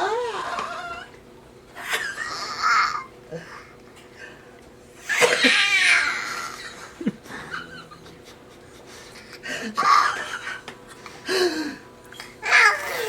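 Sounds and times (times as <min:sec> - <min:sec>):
baby squeal-laughing: 0:12.4 - 0:13.0.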